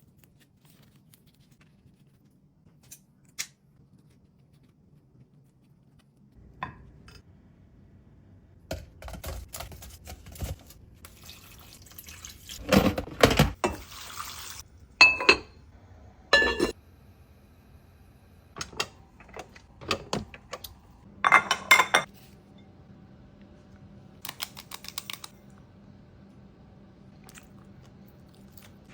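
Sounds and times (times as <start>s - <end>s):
dishes and utensils clinking: 15.0s - 15.6s, 16.3s - 16.8s, 18.6s - 22.2s.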